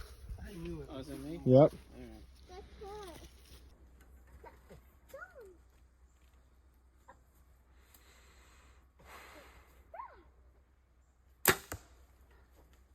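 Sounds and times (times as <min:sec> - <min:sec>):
bow shot crack: 0:11.4 - 0:12.1.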